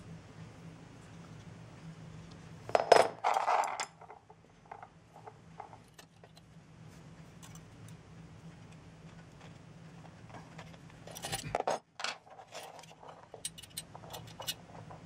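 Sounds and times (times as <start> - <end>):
low steady hum: 0.0 - 15.0
small metal parts clinking: 10.6 - 15.0.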